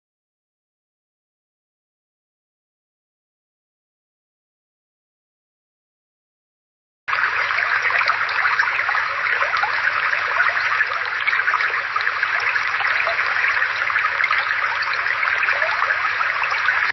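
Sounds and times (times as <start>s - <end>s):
brook babbling: 7.1s - 16.9s.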